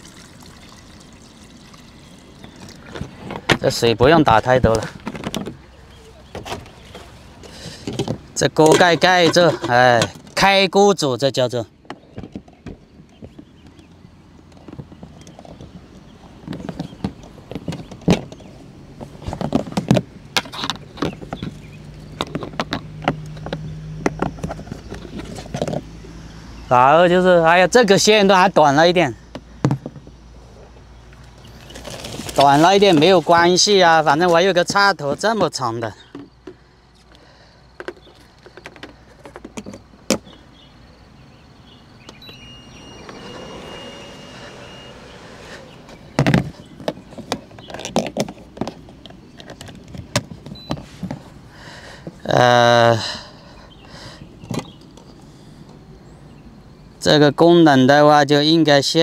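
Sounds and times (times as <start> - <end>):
plastic clicks and knocks: 37.8 - 40.4
short electronic beeps: 42.2 - 45.1
steady high electronic tone: 42.2 - 46.0.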